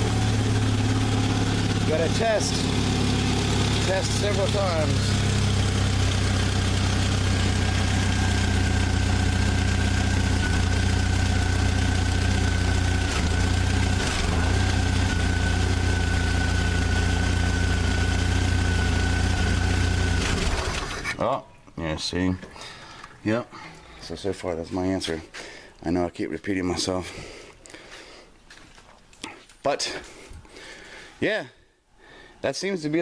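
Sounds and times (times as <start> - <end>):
car engine idling: 0.0 - 21.1.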